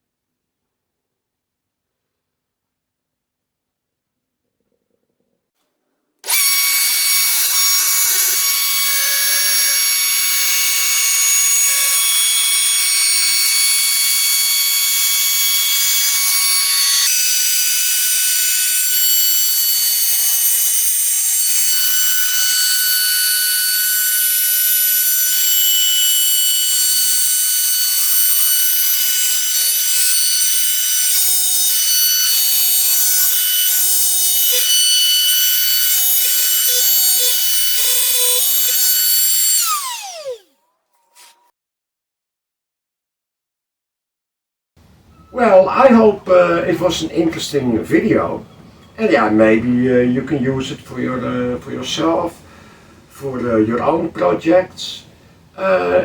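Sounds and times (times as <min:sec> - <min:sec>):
router cutting with high whine: 0:06.2 - 0:41.4.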